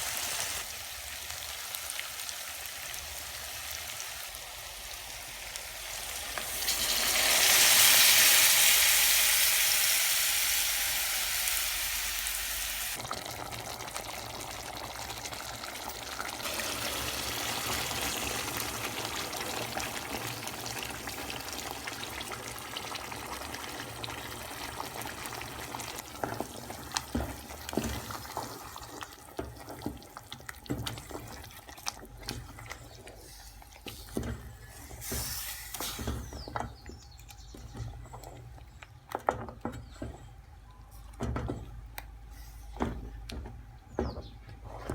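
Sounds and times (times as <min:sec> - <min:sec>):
food sizzling in hot oil: 0:00.0 - 0:30.0.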